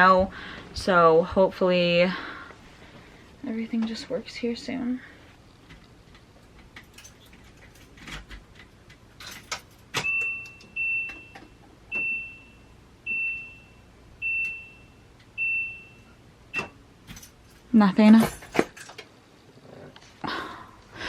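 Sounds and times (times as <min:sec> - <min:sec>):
keys rattling: 0:06.1 - 0:10.7, 0:17.0 - 0:19.0.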